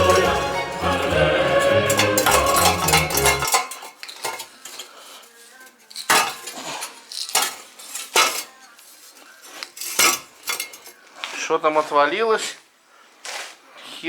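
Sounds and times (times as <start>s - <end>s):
broken pieces rattling in metal converter: 0.0s - 5.1s, 5.8s - 11.0s.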